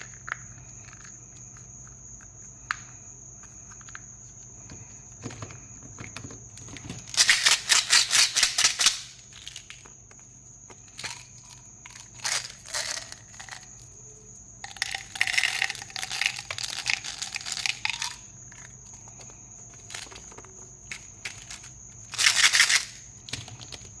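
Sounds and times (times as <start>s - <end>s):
plastic wrappers crinkling: 19.8s - 23.8s.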